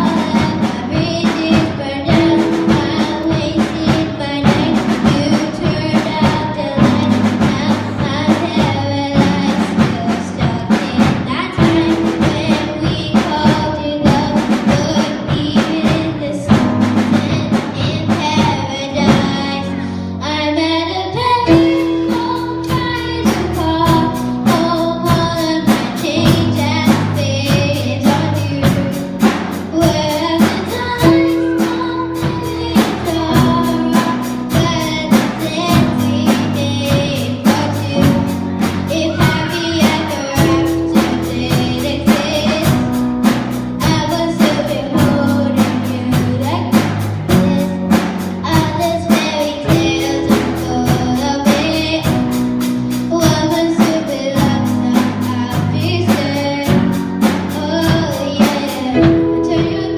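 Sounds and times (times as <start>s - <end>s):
bass: 0.0s - 59.9s
drum kit beat: 0.0s - 59.9s
person singing: 0.0s - 59.9s
piano: 0.0s - 59.9s.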